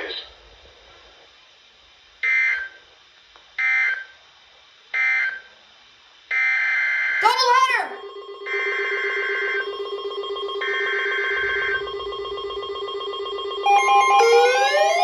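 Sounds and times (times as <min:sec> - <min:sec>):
fast-pulsing ring-like tone: 0:07.3 - 0:15.0
rising siren-like wail: 0:07.9 - 0:15.0
two-tone attention signal: 0:07.9 - 0:15.0.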